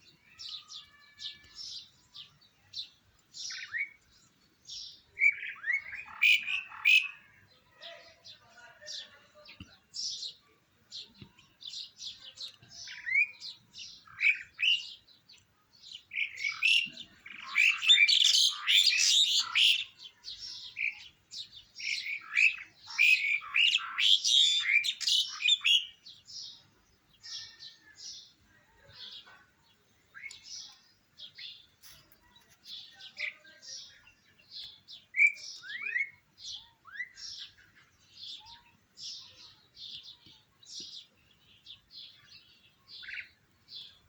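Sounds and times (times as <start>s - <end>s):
bird chirping and squawking: 5.2s - 7.4s, 16.1s - 21.0s, 21.8s - 26.0s.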